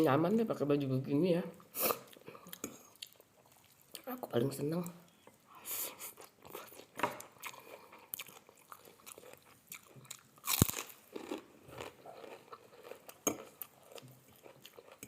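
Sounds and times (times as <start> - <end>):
crunchy crackers being chewed: 6.2 - 15.0.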